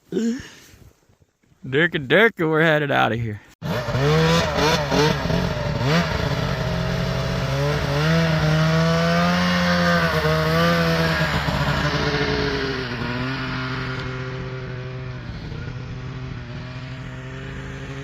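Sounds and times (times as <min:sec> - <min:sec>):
snowmobile engine running: 0:03.6 - 0:18.0.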